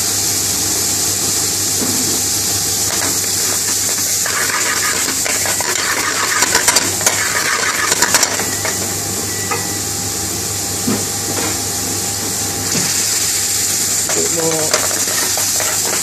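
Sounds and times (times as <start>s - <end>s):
prawns sizzling in a pan: 0.0s - 10.6s, 12.3s - 16.0s
metal utensil scraping a pan: 3.5s - 8.8s, 14.1s - 16.0s.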